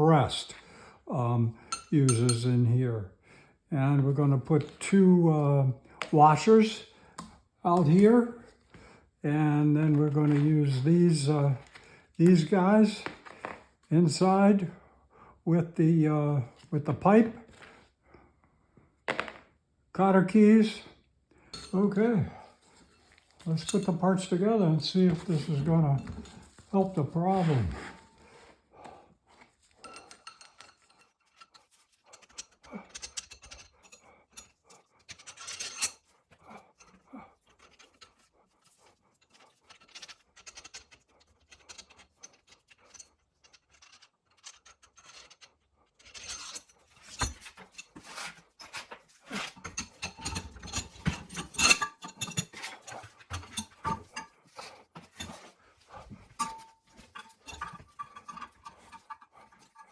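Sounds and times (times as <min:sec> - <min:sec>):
metal parts clinking and scraping: 0:01.7 - 0:02.5, 0:22.8 - 0:28.1, 0:29.7 - 0:36.1, 0:39.2 - 0:59.9.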